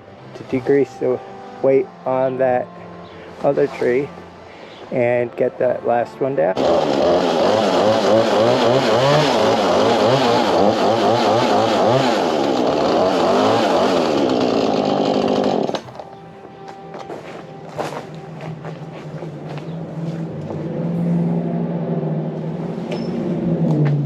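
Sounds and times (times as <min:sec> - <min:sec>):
chainsaw cutting: 0:05.0 - 0:16.1.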